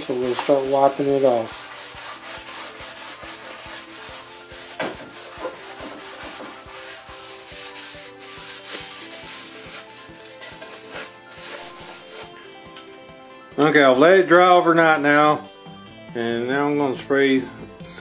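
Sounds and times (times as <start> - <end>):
cloth rag wiping wood: 0.0 - 10.1, 10.8 - 12.4.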